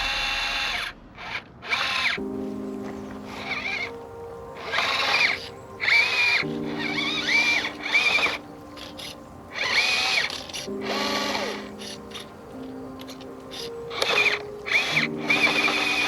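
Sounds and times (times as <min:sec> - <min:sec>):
background music with held notes: 0:02.2 - 0:16.0
electric motor whining: 0:02.9 - 0:04.0, 0:04.6 - 0:16.0.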